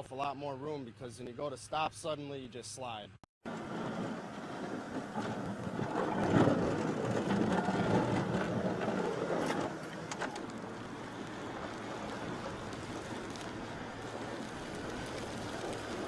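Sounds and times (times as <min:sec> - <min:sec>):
vehicle passing on snowy road: 0:03.5 - 0:16.0.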